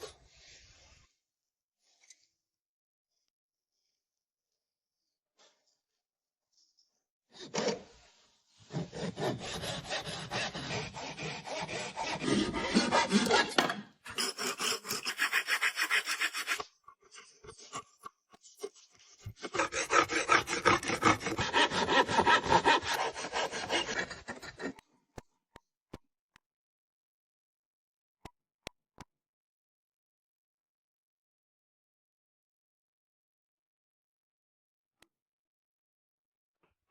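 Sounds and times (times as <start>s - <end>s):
hand saw cutting wood: 8.6s - 24.9s.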